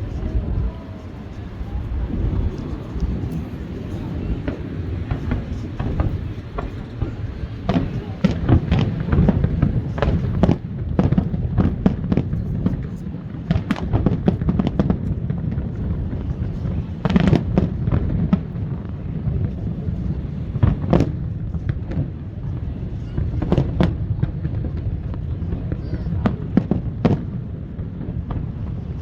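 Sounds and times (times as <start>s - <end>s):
dense rumble: 0.0s - 12.8s
firework bursts and crackles: 0.0s - 29.0s
loud firework bangs: 0.0s - 29.0s.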